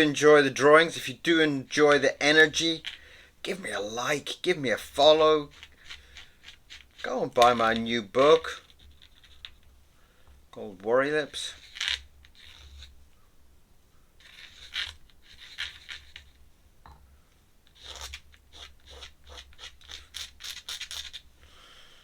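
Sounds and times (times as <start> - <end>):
pen scratching on paper: 14.2 - 16.3, 17.8 - 21.2.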